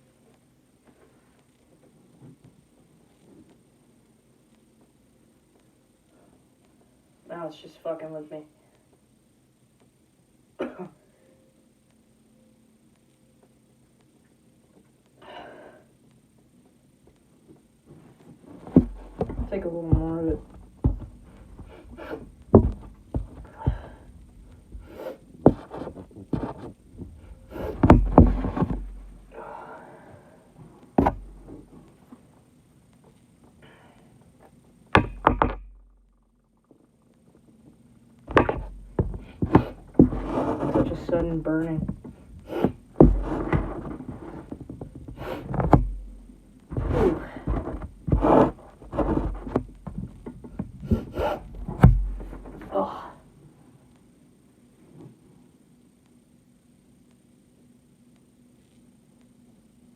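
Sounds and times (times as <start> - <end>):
person sniffing and snorting: 42.4 - 42.8, 50.8 - 51.5.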